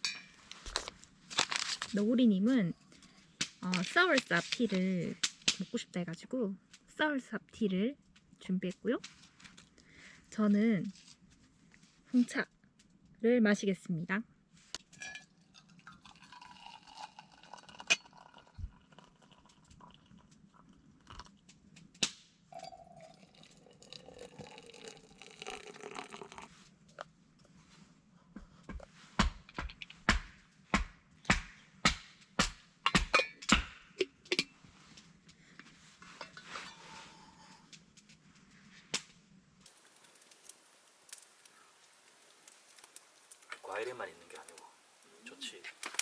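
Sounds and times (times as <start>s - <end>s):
sharp cracks and pops: 0.0s - 2.0s, 2.9s - 5.8s, 14.7s - 22.6s, 29.2s - 35.4s, 38.8s - 46.0s
cups and utensils clinking: 15.0s - 20.2s, 22.5s - 26.5s.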